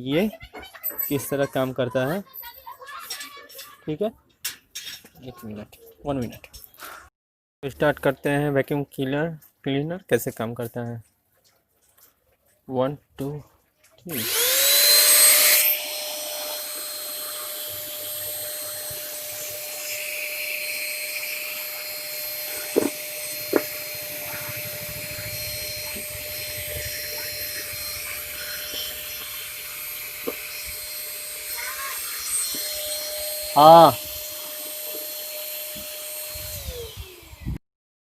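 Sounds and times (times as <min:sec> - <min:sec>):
vacuum cleaner motor whining: 0:14.1 - 0:37.6.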